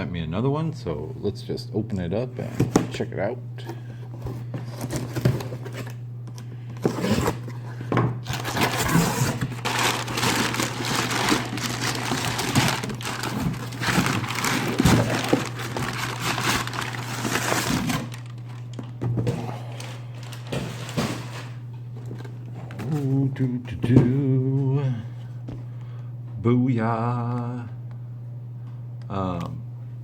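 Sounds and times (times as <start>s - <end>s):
cardboard box being opened: 4.2s - 6.0s, 8.2s - 18.4s
packaging crinkling and tearing: 8.2s - 18.9s, 19.7s - 21.6s.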